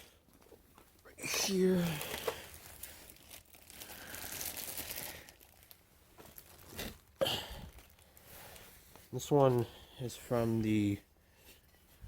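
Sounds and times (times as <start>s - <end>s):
packaging crinkling: 0.1s - 8.6s.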